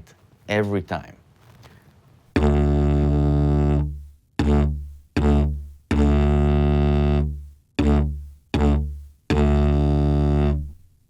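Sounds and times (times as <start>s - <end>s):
didgeridoo drone: 2.4s - 10.7s.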